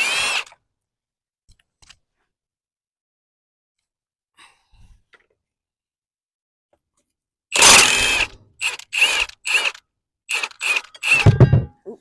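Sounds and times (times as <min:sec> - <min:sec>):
power drill motor whine: 0:00.0 - 0:00.6, 0:07.5 - 0:11.5.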